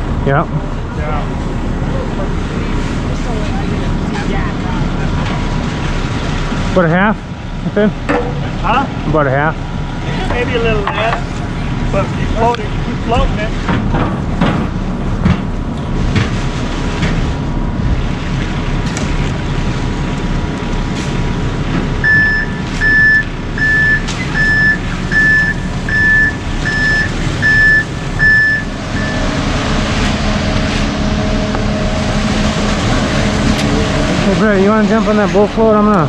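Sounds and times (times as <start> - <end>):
heavy vehicle engine running: 0.0 - 36.0
backup alarm beeps: 22.0 - 29.4.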